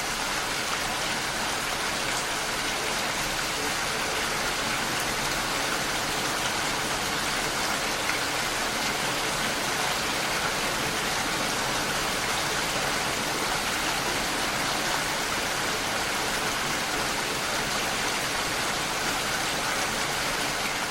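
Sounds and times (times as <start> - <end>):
heavy rain: 0.0 - 20.9.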